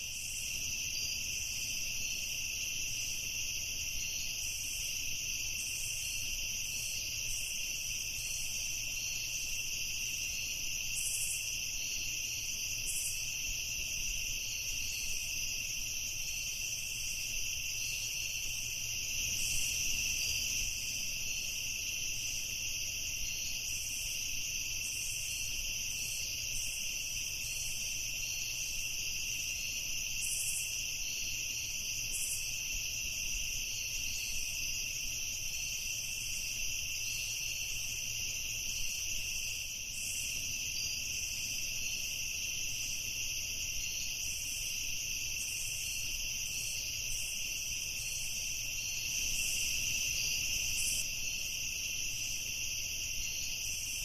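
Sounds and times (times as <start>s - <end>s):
crickets trilling: 0.0s - 54.0s.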